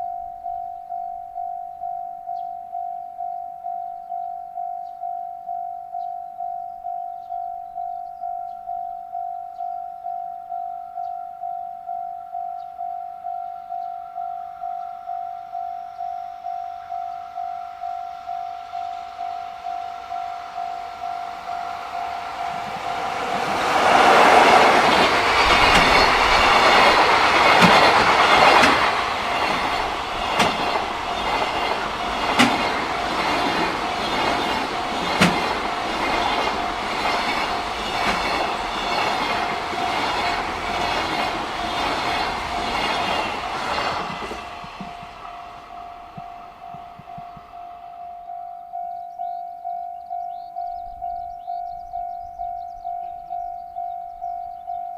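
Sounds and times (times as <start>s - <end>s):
train wheels rushing on rail: 16.5s - 48.2s
wheels clacking over rail joints: 21.8s - 47.5s.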